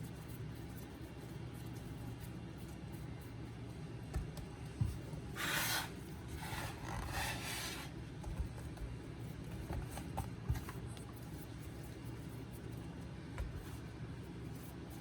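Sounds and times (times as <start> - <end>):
hands rubbing dough: 0.0 - 15.0.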